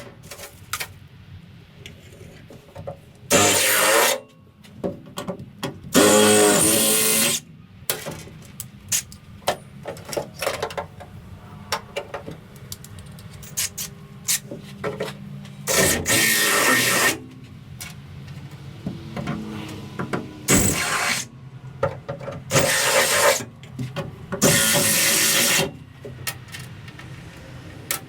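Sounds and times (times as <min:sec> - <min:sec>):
power tool bursts: 0:03.3 - 0:04.2, 0:05.9 - 0:07.4, 0:15.7 - 0:17.2, 0:20.5 - 0:21.3, 0:22.5 - 0:23.4, 0:24.4 - 0:25.7
tools clicking and knocking: 0:07.9 - 0:16.2, 0:21.8 - 0:28.0.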